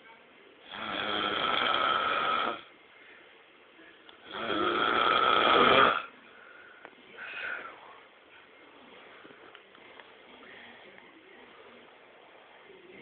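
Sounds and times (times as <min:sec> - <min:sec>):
woman snoring: 0:00.7 - 0:02.7, 0:04.2 - 0:06.1.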